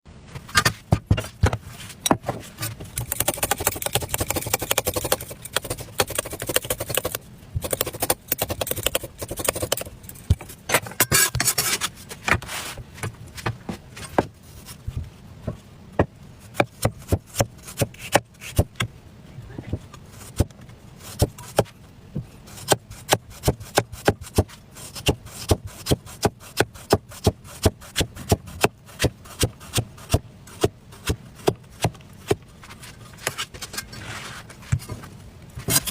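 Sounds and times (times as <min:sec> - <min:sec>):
knife peeling potato: 0:02.9 - 0:10.5, 0:22.5 - 0:32.4, 0:35.6 - 0:35.9.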